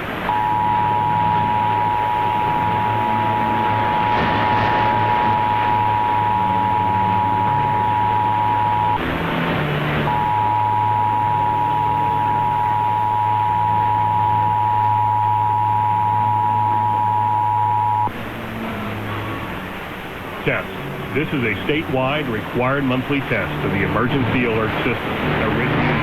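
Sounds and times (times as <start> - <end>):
hissy radio broadcast: 0.0 - 26.0
two-tone alert signal: 0.3 - 9.1.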